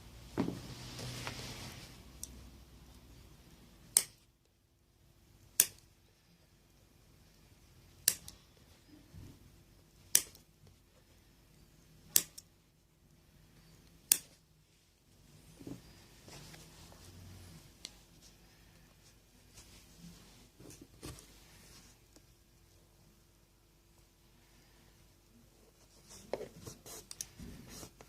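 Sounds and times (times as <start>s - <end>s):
sharp clicks: 14.1s - 14.4s.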